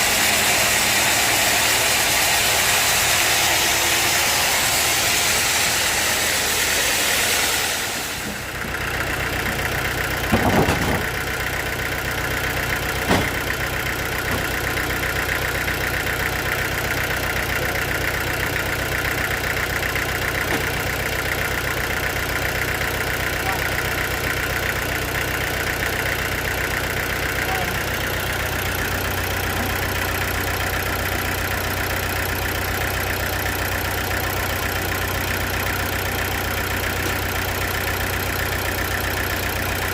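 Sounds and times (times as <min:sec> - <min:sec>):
loud hiss: 0:00.0 - 0:08.8
engine idling: 0:00.0 - 0:39.9
knocks: 0:10.3 - 0:11.1, 0:13.0 - 0:13.5.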